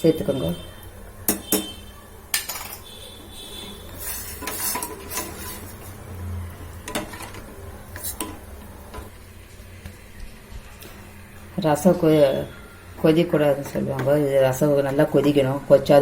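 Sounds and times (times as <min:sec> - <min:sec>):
spoon scraping cooking pot: 0:03.6 - 0:06.1, 0:06.8 - 0:09.1.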